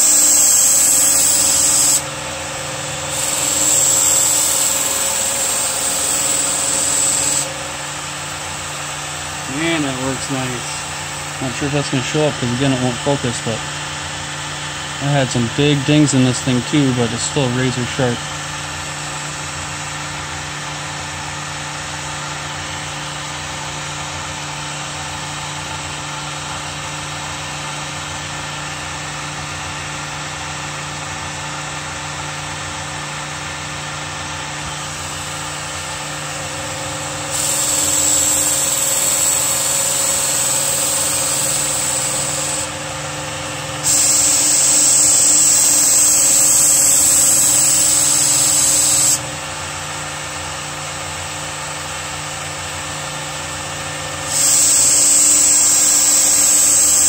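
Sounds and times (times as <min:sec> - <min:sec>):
knife grinding on abrasive belt: 0:00.0 - 0:02.0, 0:03.0 - 0:07.6, 0:34.9 - 0:42.8, 0:43.8 - 0:49.3, 0:54.3 - 0:57.0
belt sharpener motor humming: 0:00.0 - 0:13.6, 0:34.7 - 0:49.5, 0:54.2 - 0:57.0.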